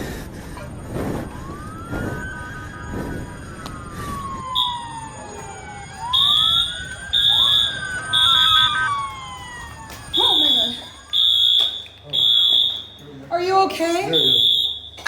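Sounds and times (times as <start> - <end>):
emergency sirens wailing: 0.7 - 15.0
high-pitched electronic alarm beeps: 4.6 - 5.4, 10.1 - 13.0, 14.1 - 15.0.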